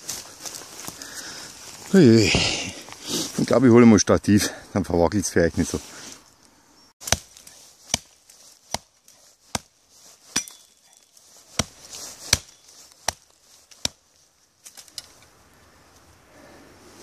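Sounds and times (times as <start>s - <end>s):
axe chopping wood: 7.0s - 10.8s, 11.5s - 14.0s.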